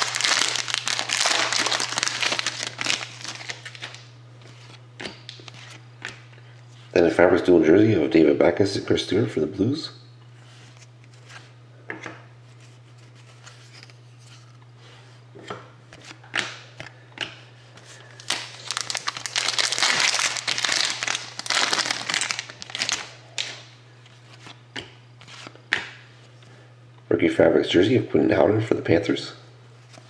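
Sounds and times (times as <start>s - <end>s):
wrapper crinkling and rustling: 0.0s - 4.0s, 18.2s - 23.6s
low electrical hum: 0.0s - 30.0s.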